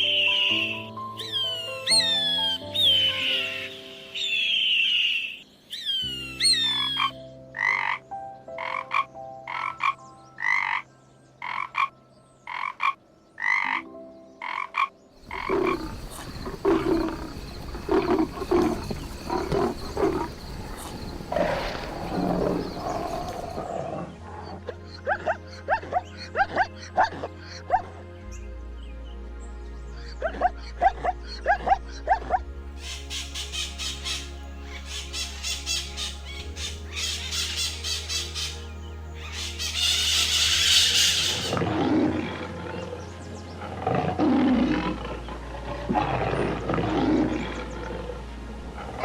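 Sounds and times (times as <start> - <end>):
soft background music: 0.0 - 49.0
animal calls: 12.5 - 27.9, 30.2 - 43.0.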